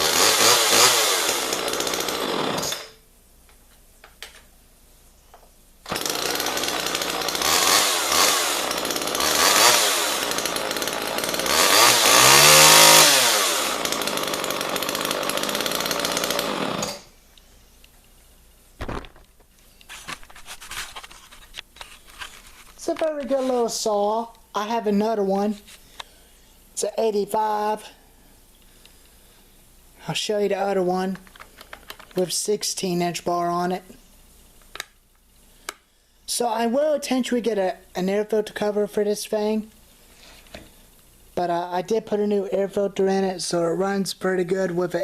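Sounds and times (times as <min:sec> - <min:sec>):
chainsaw revving: 0:00.0 - 0:03.0, 0:05.9 - 0:17.1
faint clicks and handling noise: 0:03.4 - 0:04.5, 0:31.1 - 0:32.3.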